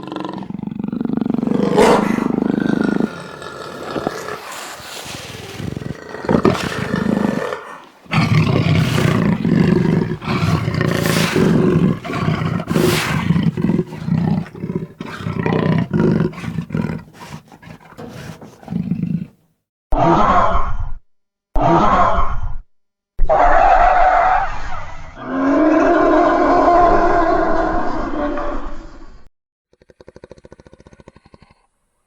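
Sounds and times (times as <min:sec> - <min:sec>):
jaguar growling and roaring: 0:00.0 - 0:19.4.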